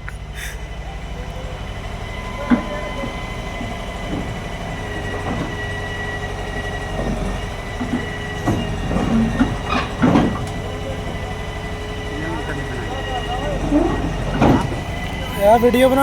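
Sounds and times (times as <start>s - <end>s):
excavator diesel engine whining: 0.0s - 16.0s
metal knocks and clanks: 7.0s - 10.8s.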